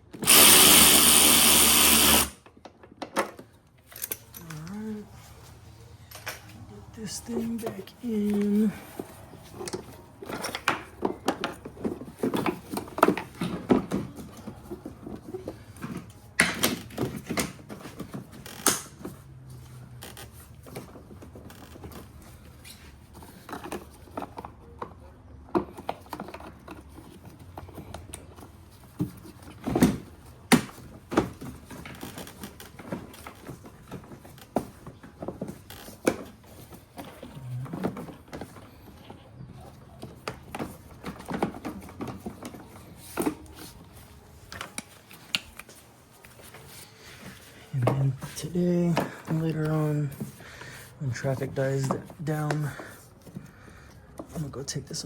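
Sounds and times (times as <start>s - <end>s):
clicks and knocks of car parts: 9.6s - 19.2s.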